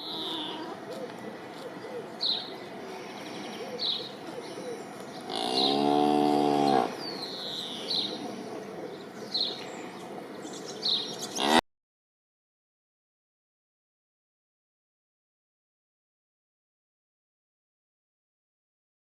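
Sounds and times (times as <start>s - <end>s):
birds chirping: 0.0s - 11.6s
cow mooing: 5.3s - 7.0s, 11.4s - 11.6s.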